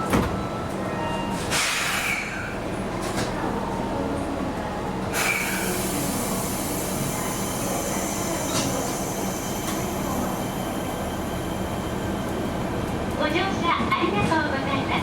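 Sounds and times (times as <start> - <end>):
train rumble: 0.0 - 15.0
hiss: 5.2 - 7.0.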